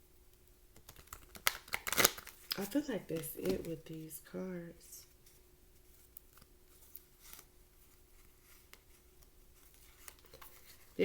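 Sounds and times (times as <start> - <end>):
faint steady hum: 0.0 - 11.0
cards clicking and rustling: 0.7 - 4.1, 8.4 - 10.9.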